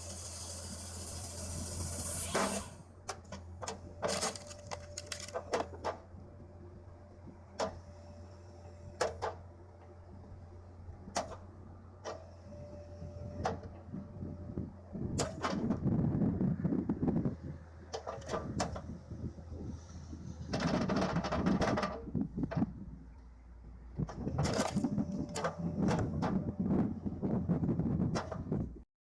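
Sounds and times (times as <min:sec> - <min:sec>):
machine whine: 0:00.0 - 0:02.8
sharp clicks and knocks: 0:20.5 - 0:22.7.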